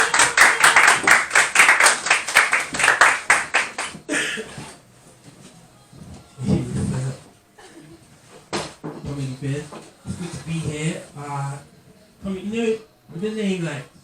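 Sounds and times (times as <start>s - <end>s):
small audience clapping: 0.0s - 4.1s.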